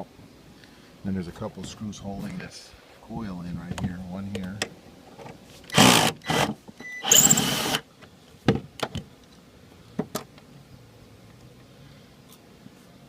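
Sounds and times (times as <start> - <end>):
power screwdriver whirring: 5.7 - 7.8.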